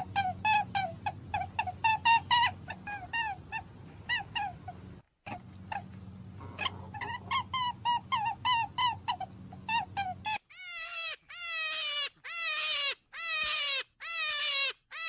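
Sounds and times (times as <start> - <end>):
rabbit squeaking: 0.0 - 15.0.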